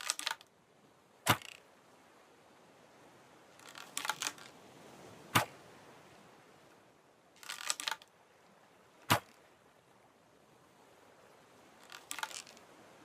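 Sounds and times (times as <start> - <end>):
bow clicks: 0.0 - 0.5, 1.3 - 1.6, 3.6 - 4.6, 7.4 - 8.1, 9.0 - 9.4, 11.8 - 12.7
bow sharp snap: 1.3 - 1.6, 5.4 - 5.6, 9.1 - 9.4.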